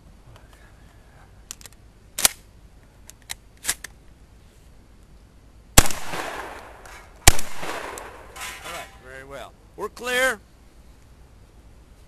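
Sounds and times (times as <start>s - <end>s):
sharp cracks: 1.5s - 2.5s, 5.8s - 9.1s
shotgun blast: 5.8s - 8.9s.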